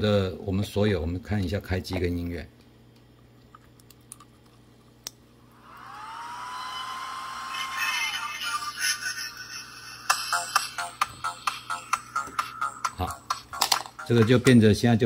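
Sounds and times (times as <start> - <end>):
electronic music with a beat: 10.0 - 14.8.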